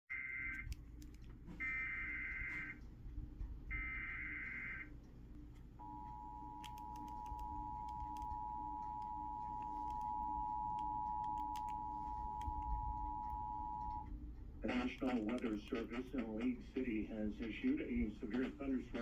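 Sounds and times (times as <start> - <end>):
two-tone attention signal: 5.8 - 14.1.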